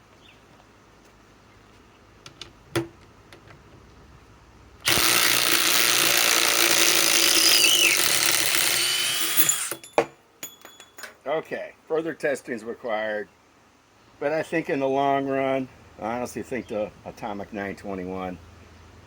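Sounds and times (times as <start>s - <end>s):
impact wrench hammering: 4.9s - 10.7s.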